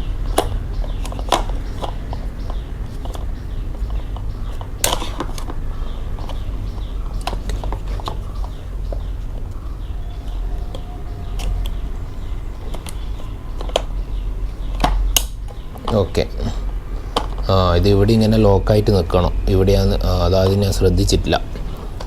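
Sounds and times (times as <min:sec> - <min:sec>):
steady low hum: 0:00.0 - 0:22.0
plastic parts clicking and knocking: 0:00.3 - 0:09.6, 0:12.6 - 0:14.0, 0:14.6 - 0:17.5.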